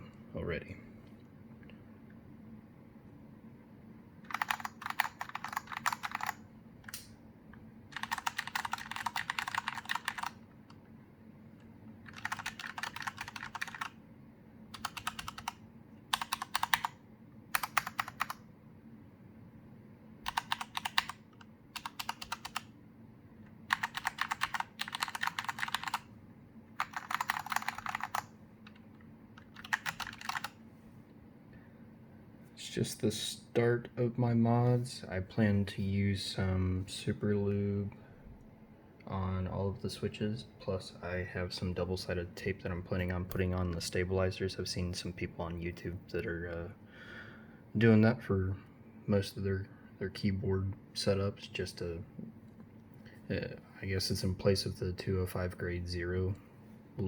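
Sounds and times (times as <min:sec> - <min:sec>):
mechanical keyboard typing: 0:04.3 - 0:07.0, 0:07.9 - 0:10.4, 0:12.1 - 0:14.0, 0:14.7 - 0:18.4, 0:20.2 - 0:22.7, 0:23.7 - 0:26.1, 0:26.8 - 0:30.6.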